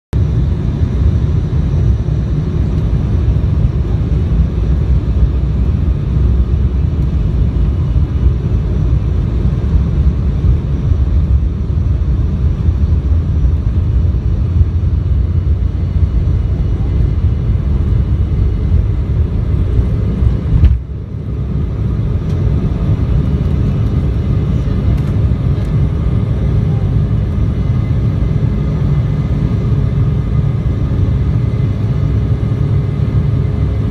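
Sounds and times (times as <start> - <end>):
airliner taking off: 0.2 - 33.9.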